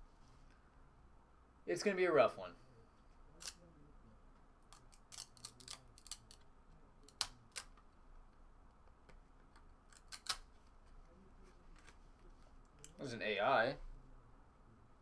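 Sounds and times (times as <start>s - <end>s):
cards peeling apart with clicks: 3.4s - 3.6s, 4.7s - 7.9s, 9.0s - 10.6s.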